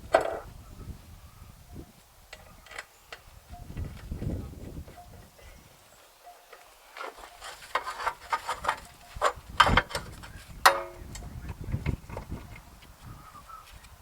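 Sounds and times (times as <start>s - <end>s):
metal tools clanking: 6.2s - 12.7s.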